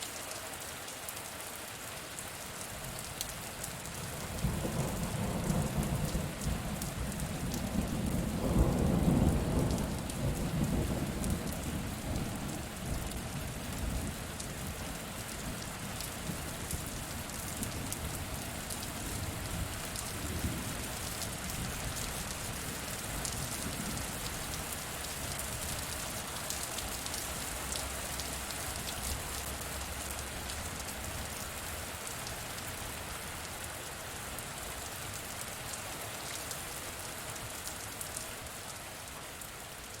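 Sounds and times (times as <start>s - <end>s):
rain pattering: 0.0s - 40.0s
thunder rumbling: 4.4s - 13.2s.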